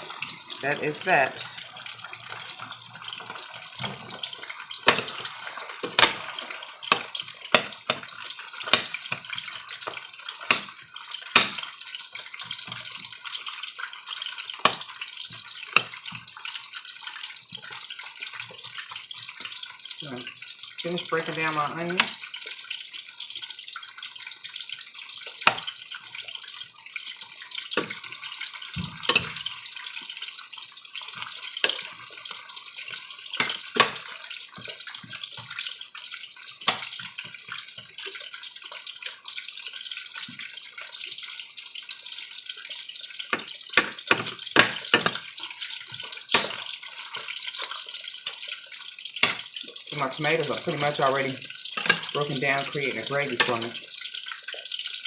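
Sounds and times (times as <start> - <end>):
vegetables sizzling in oil: 0.0 - 55.0
utensil knocking against pan: 6.9 - 8.1, 10.5 - 10.7, 11.4 - 11.6, 43.4 - 45.2, 46.4 - 46.6.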